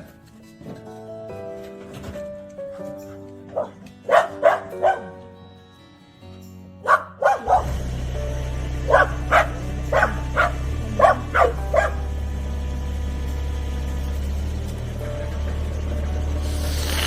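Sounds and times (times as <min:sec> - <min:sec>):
dog barking: 0:03.5 - 0:05.2, 0:06.8 - 0:07.8, 0:08.8 - 0:12.2
excavator engine running: 0:06.8 - 0:17.0.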